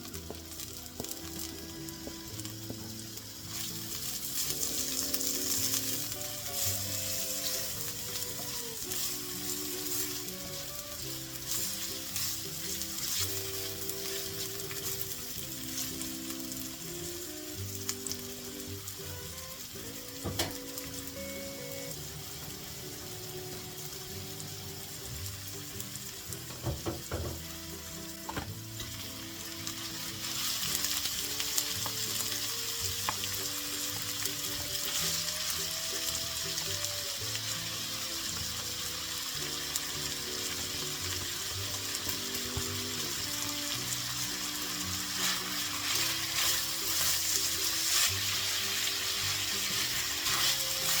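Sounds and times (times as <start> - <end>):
food sizzling in a pan: 0.0 - 51.0
quiet background music: 0.0 - 51.0
knocks: 26.5 - 27.4.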